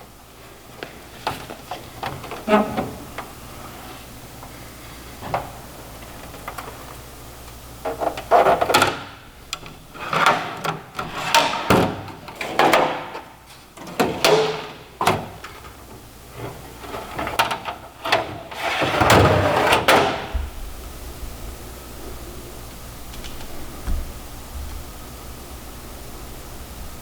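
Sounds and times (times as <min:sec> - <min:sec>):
metal drawers sliding: 0:01.1 - 0:04.1, 0:07.8 - 0:20.6.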